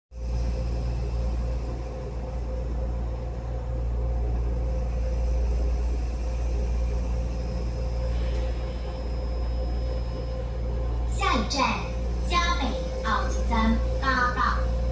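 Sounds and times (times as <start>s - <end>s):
faint high whine: 0.1s - 14.9s
train rumbling: 10.7s - 14.9s.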